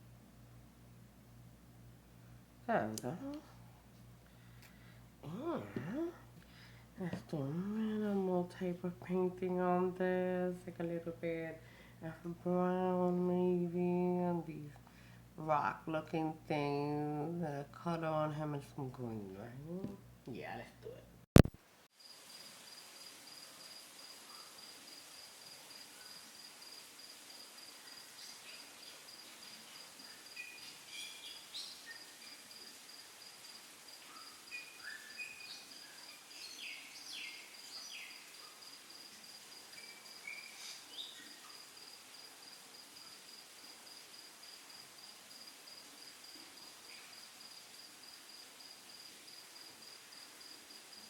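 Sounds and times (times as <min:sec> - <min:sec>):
cricket chirping: 0:22.0 - 0:51.0.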